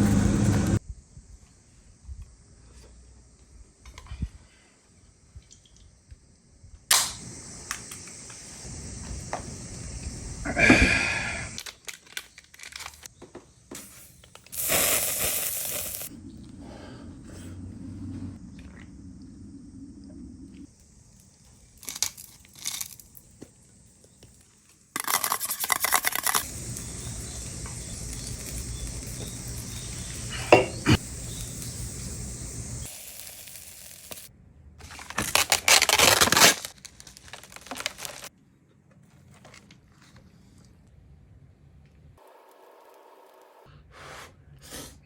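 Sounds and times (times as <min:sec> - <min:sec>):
rustling and crinkling: 0:11.6 - 0:14.6, 0:34.8 - 0:40.9
food sizzling hiss: 0:13.7 - 0:16.1, 0:20.6 - 0:34.3
sharp clink: 0:30.5 - 0:31.0
utensils knocking against pan: 0:30.5 - 0:31.0.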